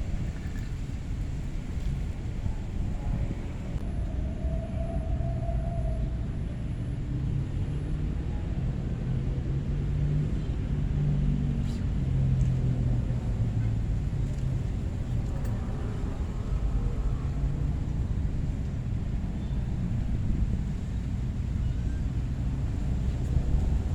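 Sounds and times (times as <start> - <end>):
motor engine rumbling: 0.0 - 4.0, 10.2 - 23.9
low background noise: 0.0 - 23.9.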